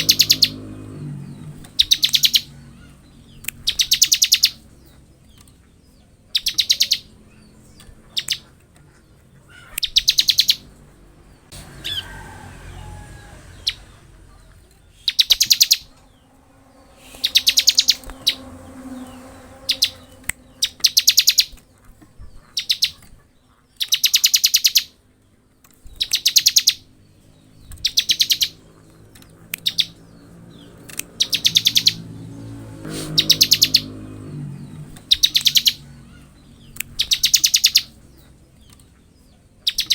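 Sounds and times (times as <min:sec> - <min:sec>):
bird rattling trills: 0:15.0 - 0:21.6.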